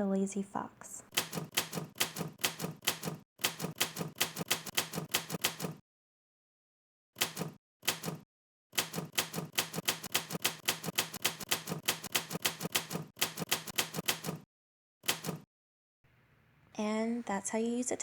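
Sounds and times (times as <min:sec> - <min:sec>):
manual typewriter typing: 0:01.1 - 0:05.8, 0:07.2 - 0:08.2, 0:08.8 - 0:14.4, 0:15.0 - 0:15.4.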